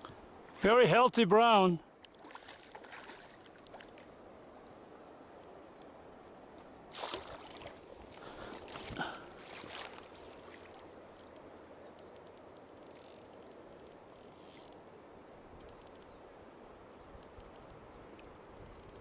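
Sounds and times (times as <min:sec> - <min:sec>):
flowing river water: 0:00.0 - 0:19.0
water splashing and sloshing: 0:02.0 - 0:04.2, 0:06.6 - 0:11.5.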